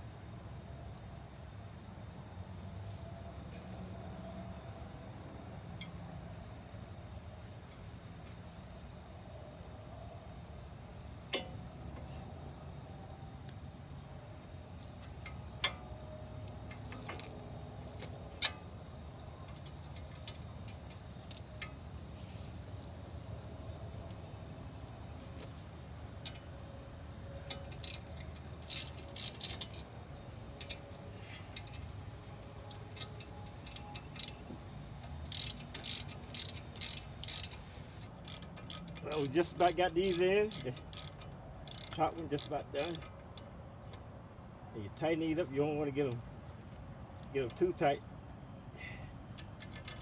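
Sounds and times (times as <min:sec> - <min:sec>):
metallic hand tool clicks: 0:38.3 - 0:43.1.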